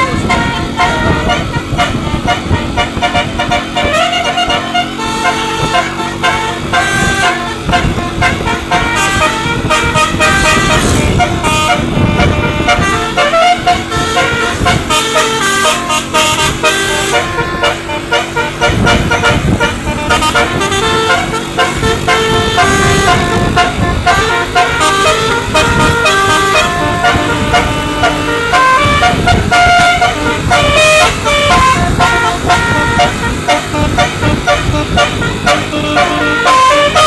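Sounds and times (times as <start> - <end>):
low bus rumble: 0.0 - 37.0
musical bus horn melody: 0.0 - 37.0.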